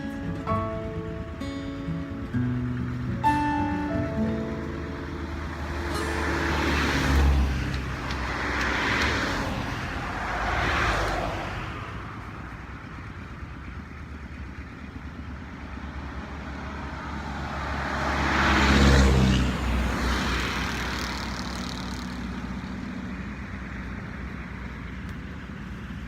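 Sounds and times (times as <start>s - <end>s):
vehicles passing: 0.0s - 26.0s.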